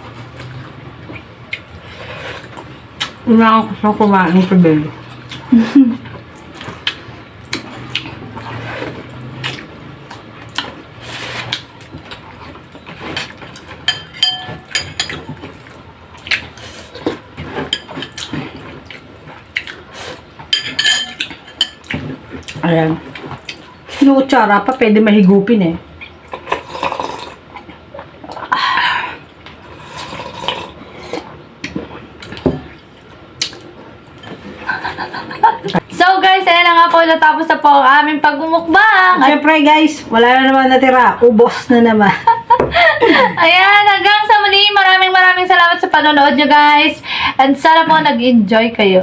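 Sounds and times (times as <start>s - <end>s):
spoon clinking on bowl: 13.9s - 15.2s, 20.6s - 21.8s
utensils scraping dishes: 20.5s - 21.9s.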